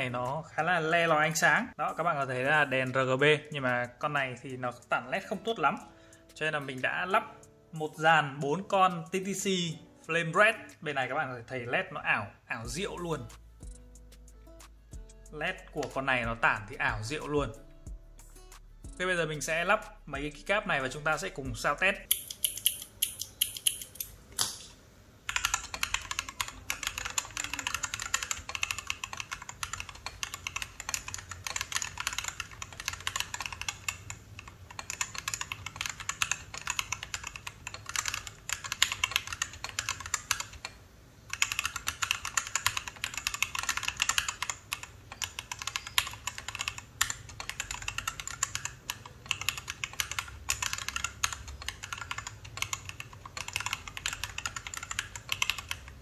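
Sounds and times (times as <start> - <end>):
mechanical keyboard typing: 25.3 - 56.0.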